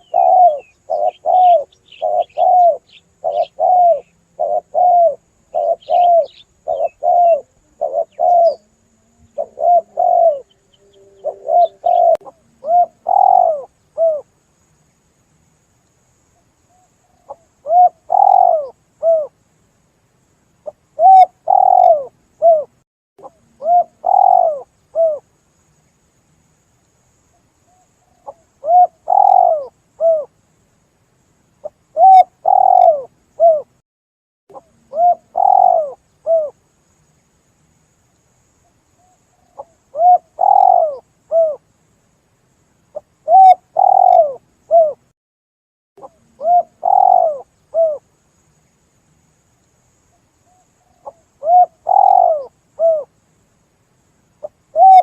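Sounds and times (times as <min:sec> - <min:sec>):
small birds chirping: 0:00.0 - 0:14.2, 0:15.8 - 0:19.3, 0:20.6 - 0:26.0, 0:26.8 - 0:30.3, 0:31.6 - 0:33.7, 0:34.5 - 0:37.3, 0:38.0 - 0:41.6, 0:42.9 - 0:45.0, 0:46.0 - 0:48.0, 0:49.6 - 0:53.1
dove cooing: 0:00.0 - 0:14.3, 0:17.2 - 0:19.3, 0:21.0 - 0:25.2, 0:28.1 - 0:30.3, 0:31.6 - 0:33.7, 0:34.5 - 0:36.6, 0:39.4 - 0:41.6, 0:43.0 - 0:45.0, 0:46.0 - 0:48.0, 0:50.5 - 0:53.1, 0:54.4 - 0:55.0.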